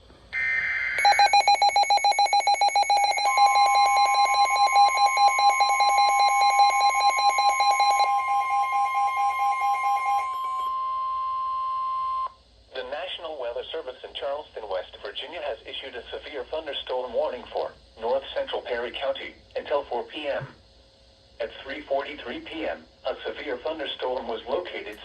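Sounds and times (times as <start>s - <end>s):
rapid pulsing electronic beep: 0.4s - 10.7s.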